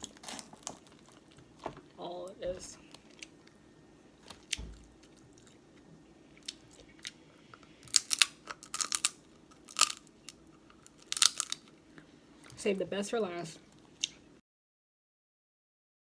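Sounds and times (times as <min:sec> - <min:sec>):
chewing and crunching: 0:00.0 - 0:01.6, 0:04.3 - 0:12.6.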